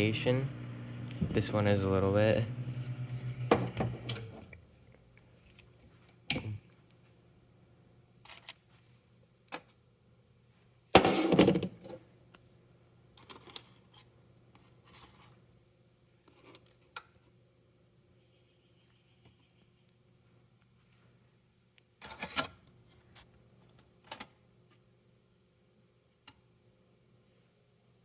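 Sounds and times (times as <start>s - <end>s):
faint low hum: 0.0s - 8.2s.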